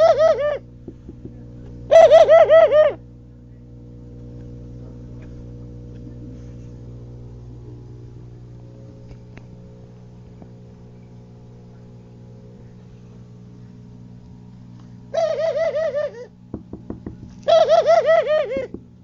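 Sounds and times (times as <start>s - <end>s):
pigeon cooing: 0.0s - 0.7s, 1.9s - 3.0s, 15.1s - 16.4s, 17.4s - 18.8s
steady low hum: 0.0s - 19.0s.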